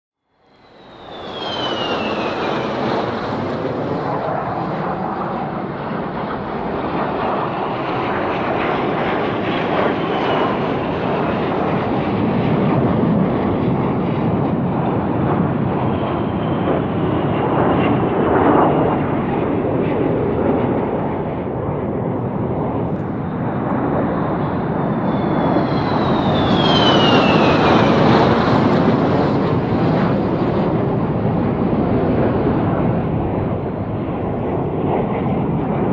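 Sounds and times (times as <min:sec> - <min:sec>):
high whine falling in pitch: 0:00.4 - 0:03.3, 0:24.7 - 0:28.2
fighter jet engine roar: 0:00.4 - 0:35.9.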